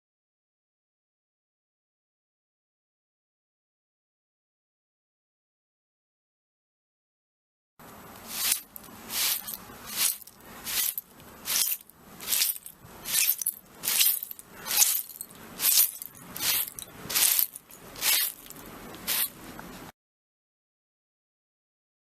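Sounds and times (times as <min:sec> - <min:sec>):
broom sweeping broken glass: 0:08.2 - 0:19.4
glass crunching and tinkling: 0:08.4 - 0:19.3.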